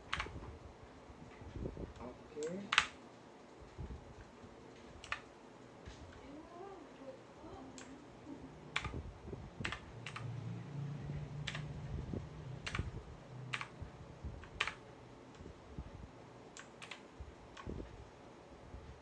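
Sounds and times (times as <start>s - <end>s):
mechanical keyboard key clicks: 12.6s - 12.9s, 14.4s - 14.8s, 16.6s - 17.0s.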